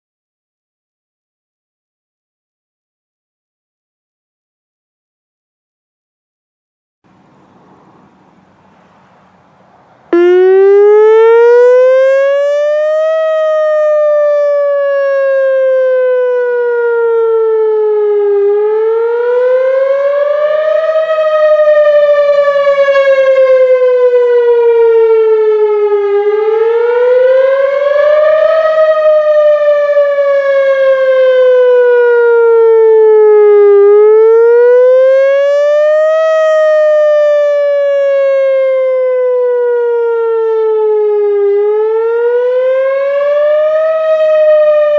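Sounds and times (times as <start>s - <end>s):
tornado siren wailing: 10.0s - 44.9s.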